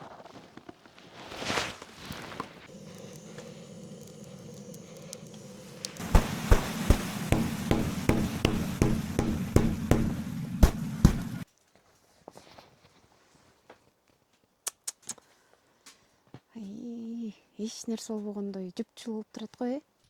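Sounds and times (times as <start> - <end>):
steady low hum: 2.7 - 11.4
sharp thuds: 2.8 - 11.4.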